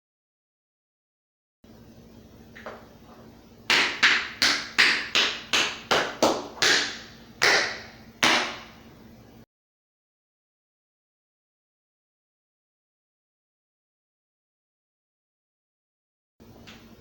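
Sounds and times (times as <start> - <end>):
tap shoes striking floor: 3.7 - 8.7.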